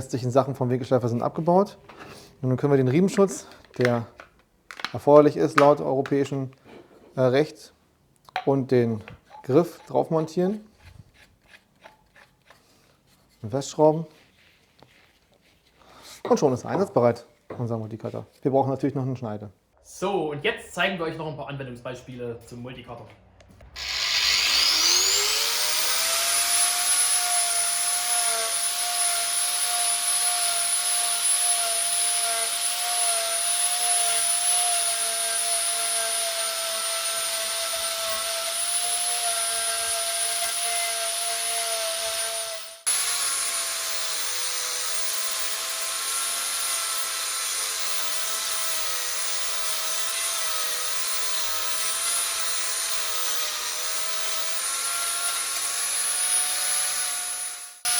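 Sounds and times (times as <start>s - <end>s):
angle grinder carving wood: 1.0s - 5.0s, 5.6s - 6.7s, 23.6s - 57.9s.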